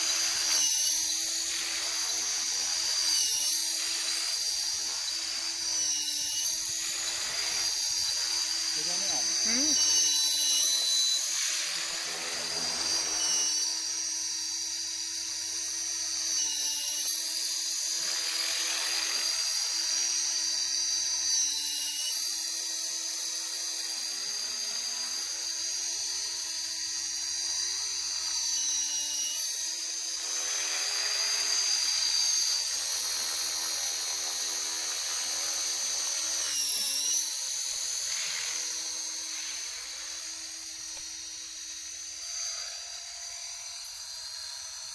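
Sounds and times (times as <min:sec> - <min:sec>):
high-pitched squeal: 0:08.7 - 0:10.2.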